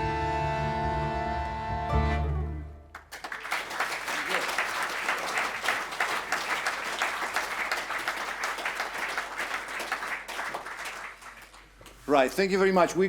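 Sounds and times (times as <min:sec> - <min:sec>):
audience applauding: 0:02.9 - 0:12.0.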